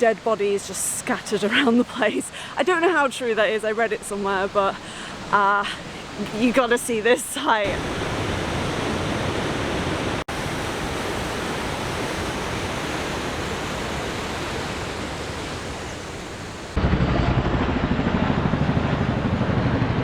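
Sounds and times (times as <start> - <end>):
water rushing over rocks: 7.5 - 16.8
fluttering low rumble: 16.8 - 20.0.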